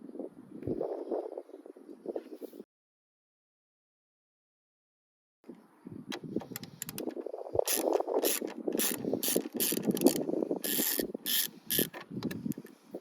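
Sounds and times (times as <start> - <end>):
sharp clicks of plastic parts: 6.1 - 12.8
rasping scrapes of plastic trim: 7.7 - 12.6.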